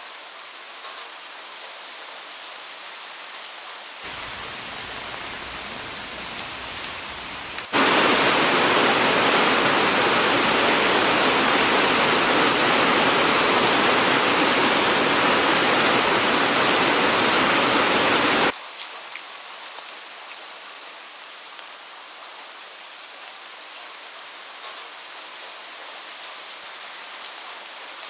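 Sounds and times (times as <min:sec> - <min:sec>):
light rain: 0:00.0 - 0:28.0
dense rain: 0:04.0 - 0:19.1
raindrops ticking: 0:04.1 - 0:08.3, 0:08.9 - 0:18.5.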